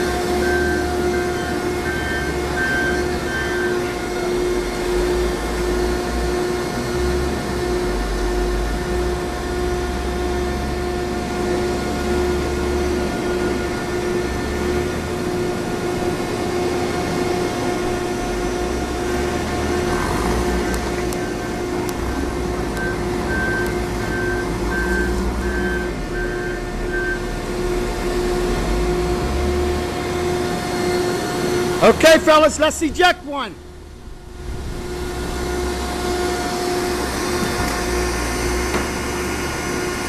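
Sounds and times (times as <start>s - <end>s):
baling machine humming and whining: 0.0s - 40.0s
low rumble: 33.6s - 37.3s.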